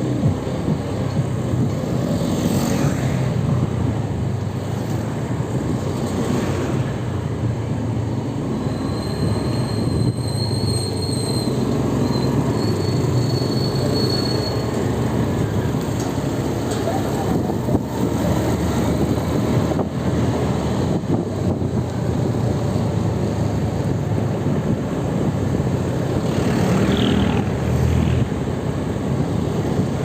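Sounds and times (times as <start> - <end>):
rumbling vehicle running noise: 0.0 - 30.0
faint high-pitched squeal: 8.6 - 14.8.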